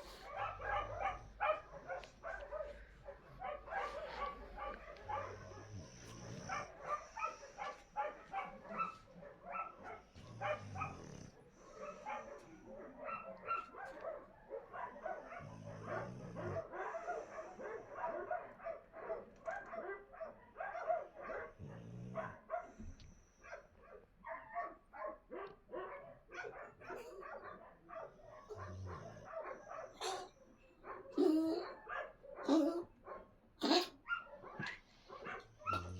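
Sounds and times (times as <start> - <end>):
dogs barking and yipping: 0.0 - 22.8, 23.4 - 35.9
dog snoring: 5.2 - 7.6, 10.2 - 12.0, 35.6 - 35.9.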